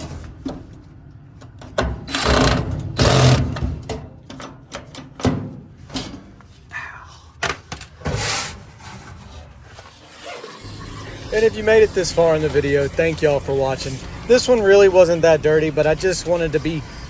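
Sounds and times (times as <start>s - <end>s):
knocks and clatter of dryer parts: 0.0s - 6.4s.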